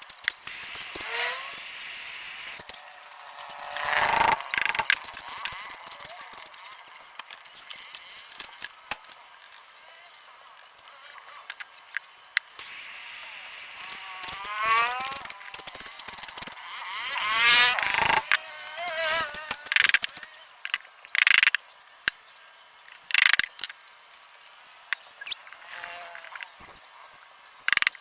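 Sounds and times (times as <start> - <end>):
metal clicks and clinks: 0.0 - 1.6, 2.4 - 9.2, 13.8 - 16.6, 18.9 - 21.6
metal scraping: 0.0 - 6.5
rising squeaks: 0.5 - 6.7, 13.7 - 20.3.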